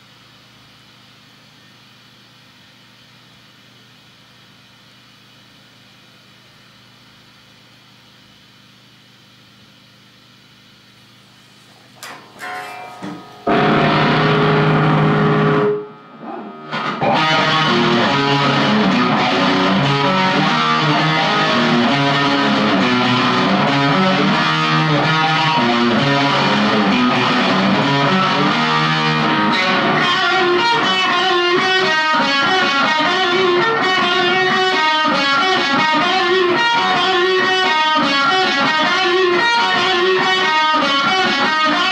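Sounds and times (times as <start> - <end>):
distorted electric guitar riffing: 12.0 - 41.9.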